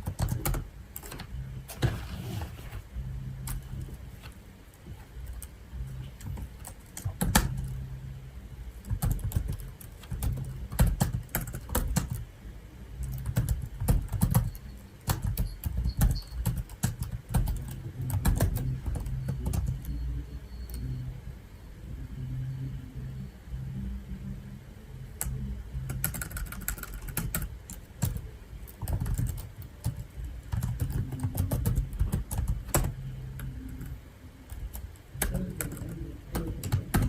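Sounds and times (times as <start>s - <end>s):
keyboard typing: 0.0s - 1.3s, 3.4s - 4.4s, 5.2s - 7.8s, 8.8s - 12.2s, 13.0s - 21.0s, 25.1s - 37.0s
low background hum: 0.0s - 37.0s.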